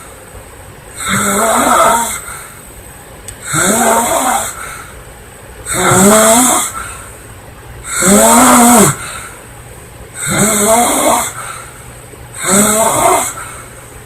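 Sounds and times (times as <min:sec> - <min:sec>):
woman snoring: 0:01.0 - 0:02.3, 0:03.4 - 0:04.6, 0:05.7 - 0:06.8, 0:10.2 - 0:11.4, 0:12.4 - 0:13.5.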